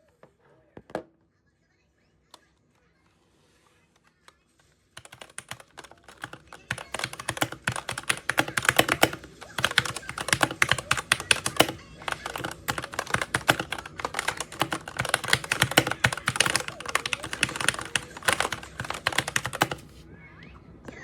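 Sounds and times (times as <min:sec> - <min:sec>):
mechanical keyboard typing: 0:05.0 - 0:20.0.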